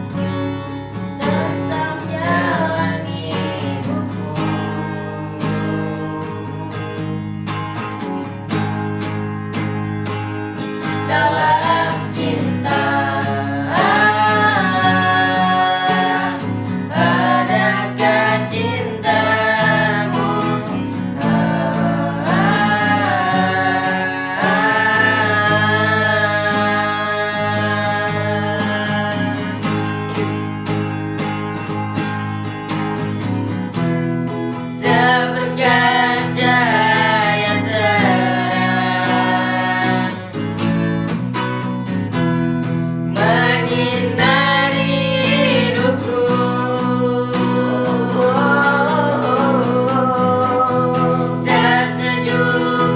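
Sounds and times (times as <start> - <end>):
guitar strumming: 0.0 - 52.9
person singing: 1.2 - 7.0, 11.0 - 30.0, 34.8 - 40.3, 43.1 - 52.9.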